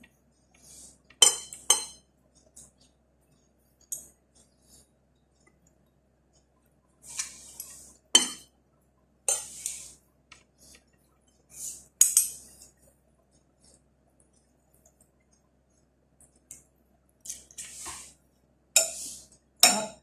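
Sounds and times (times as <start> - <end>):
cutlery clinking on a plate: 1.2 - 2.0, 8.2 - 8.5, 9.3 - 9.6
cutlery scraping a plate: 7.0 - 8.5, 9.3 - 10.0, 18.8 - 19.8.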